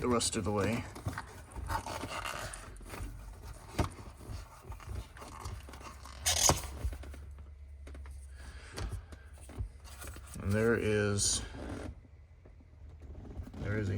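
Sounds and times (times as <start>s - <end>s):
scraping and handling noises: 0.0s - 13.9s
rubber boot tearing: 4.7s - 6.8s.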